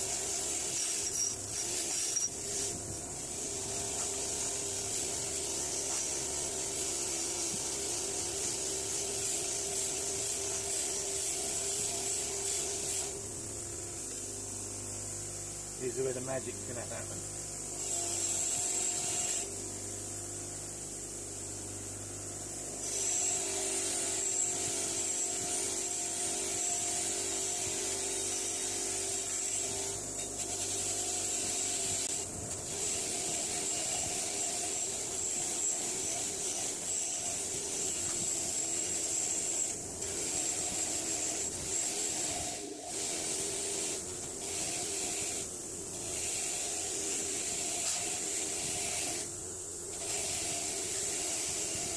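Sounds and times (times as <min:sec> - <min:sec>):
wire wheel scratching metal: 0:00.0 - 0:13.2, 0:28.2 - 0:49.3.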